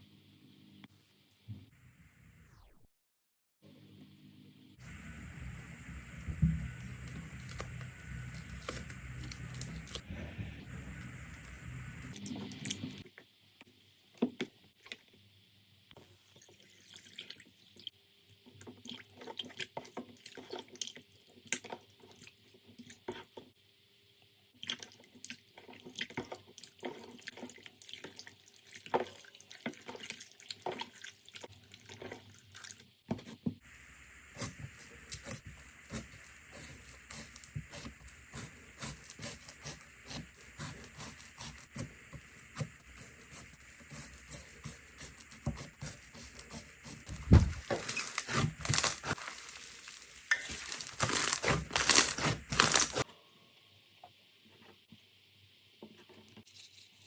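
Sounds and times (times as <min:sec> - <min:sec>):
slime squished by hand: 0:47.2 - 0:53.0
slime crackling: 0:47.3 - 0:53.0.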